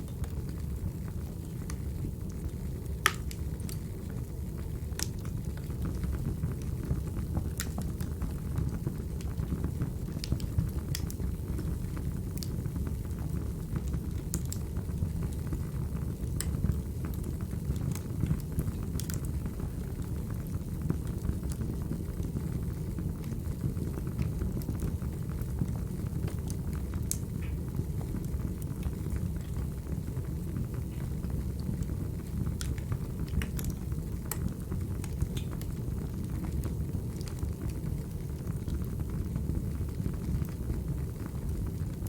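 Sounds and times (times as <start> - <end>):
wood fire crackling: 0.0 - 42.0
sharp pops and snaps: 3.0 - 3.8, 32.6 - 35.6.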